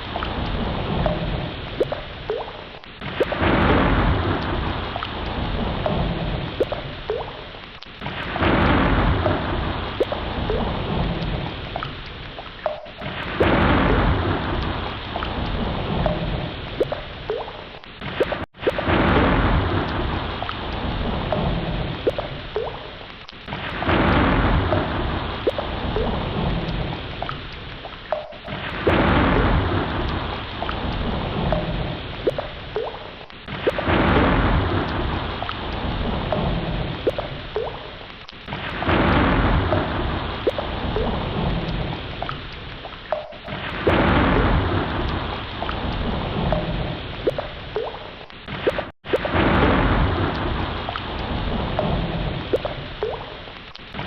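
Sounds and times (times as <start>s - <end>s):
heavy rain: 0.0s - 54.0s
water drops plinking: 1.0s - 3.5s, 5.8s - 8.0s, 9.2s - 13.6s, 15.2s - 19.1s, 19.8s - 23.0s, 24.7s - 29.4s, 30.0s - 34.0s, 36.3s - 38.8s, 39.7s - 44.4s, 45.0s - 49.4s, 51.7s - 54.0s
rolling thunder: 3.0s - 7.0s, 8.0s - 11.7s, 13.0s - 16.9s, 18.1s - 22.2s, 23.5s - 27.1s, 28.5s - 32.1s, 33.5s - 37.5s, 38.5s - 42.1s, 43.5s - 47.2s, 48.5s - 53.0s.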